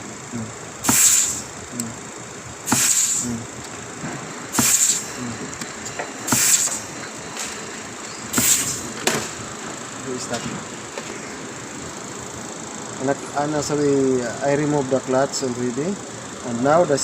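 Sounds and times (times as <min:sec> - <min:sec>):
air blow gun hissing: 0:00.0 - 0:02.0, 0:02.6 - 0:03.5, 0:04.5 - 0:05.4, 0:06.2 - 0:07.0, 0:08.3 - 0:09.0.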